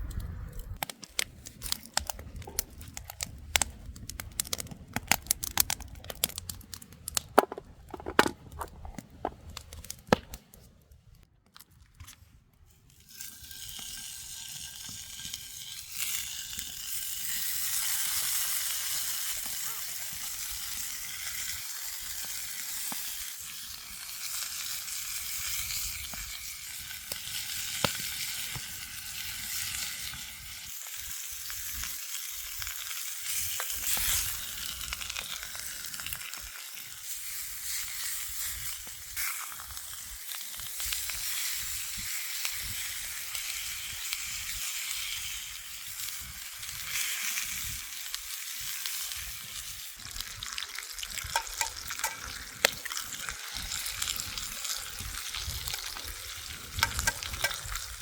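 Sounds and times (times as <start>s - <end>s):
food sizzling: 13.2s - 58.0s.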